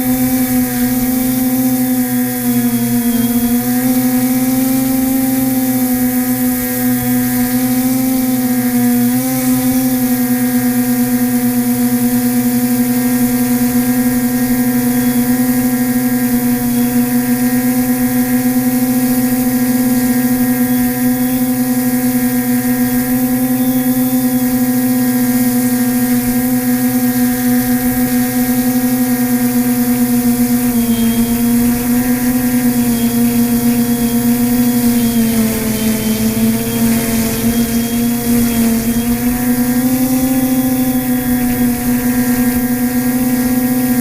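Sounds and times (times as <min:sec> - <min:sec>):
quadcopter motors humming: 0:00.0 - 0:44.0.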